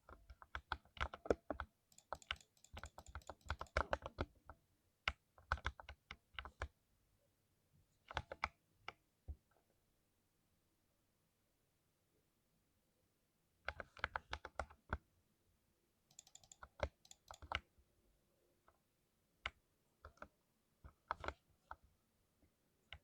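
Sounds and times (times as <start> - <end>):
mechanical keyboard typing: 0.4 - 4.3, 16.1 - 17.6.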